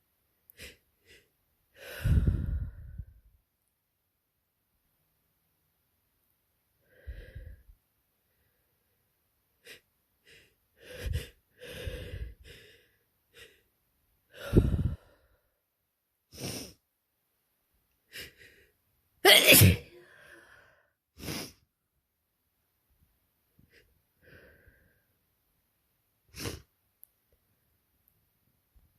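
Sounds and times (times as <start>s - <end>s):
short breaths in: 0.5s - 3.2s, 6.8s - 7.7s, 9.6s - 13.7s, 14.3s - 15.5s
person sneezing: 19.2s - 20.0s, 26.3s - 26.7s.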